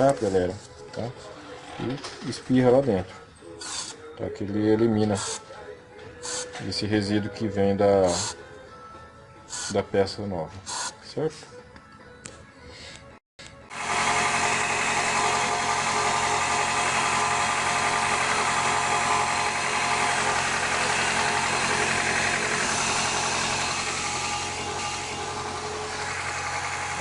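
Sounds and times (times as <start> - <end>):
car engine idling: 13.8 - 27.0.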